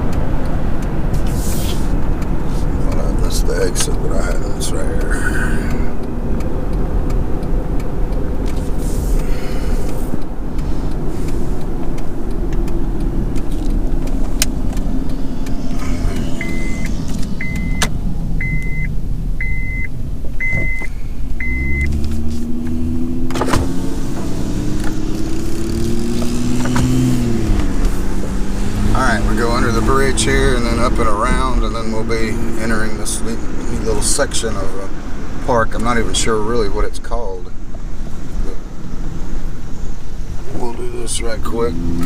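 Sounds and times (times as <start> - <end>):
car engine and road noise: 0.0 - 42.0
short beeps: 15.9 - 22.0.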